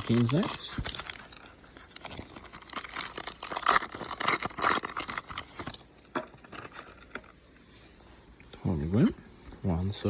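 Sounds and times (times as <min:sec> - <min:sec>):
wrapper tearing and crinkling: 0:00.0 - 0:07.3.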